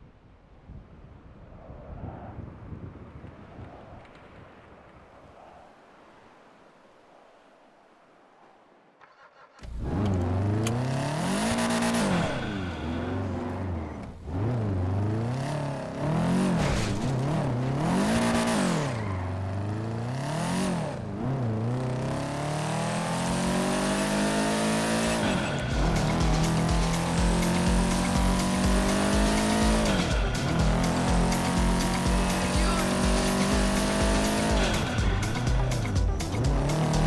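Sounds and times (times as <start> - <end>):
video game car engine revving: 9.3 - 37.0.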